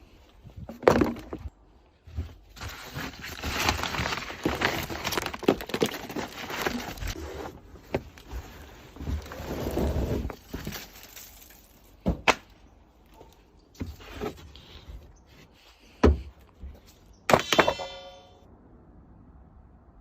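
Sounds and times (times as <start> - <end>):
hard objects knocking and clunking: 0.6 - 1.5.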